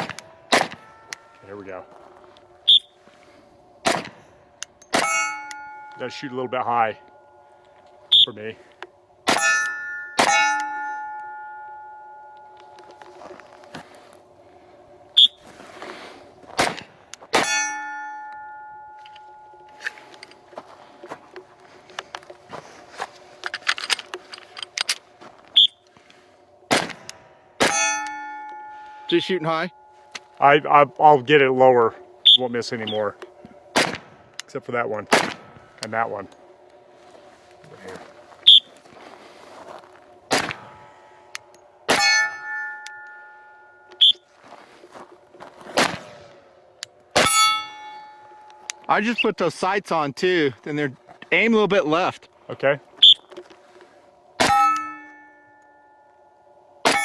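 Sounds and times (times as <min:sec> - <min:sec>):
pistol shots: 0:00.0 - 0:00.8, 0:03.8 - 0:04.2, 0:16.6 - 0:17.5, 0:26.7 - 0:27.8, 0:33.7 - 0:34.2, 0:35.1 - 0:35.5, 0:40.3 - 0:40.8
steel target ringing: 0:00.0 - 0:03.0, 0:03.9 - 0:08.4, 0:09.2 - 0:13.5, 0:17.3 - 0:20.7, 0:26.7 - 0:34.1, 0:40.3 - 0:44.4, 0:47.1 - 0:49.2, 0:54.4 - 0:57.0.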